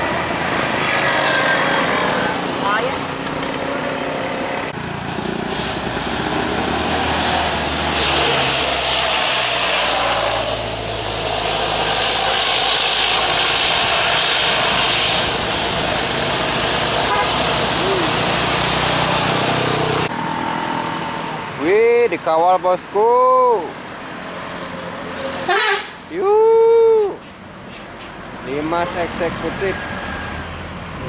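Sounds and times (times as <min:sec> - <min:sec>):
large vehicle engines running: 0:00.0 - 0:31.0
tyre and road noise: 0:00.0 - 0:31.0.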